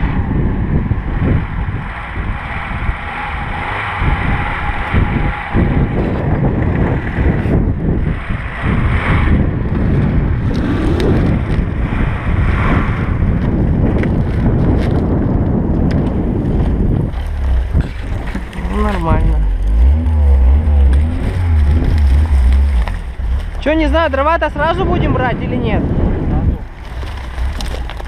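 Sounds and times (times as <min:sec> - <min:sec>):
wind buffeting microphone: 0:00.0 - 0:28.0
car engine running unevenly: 0:16.1 - 0:24.6.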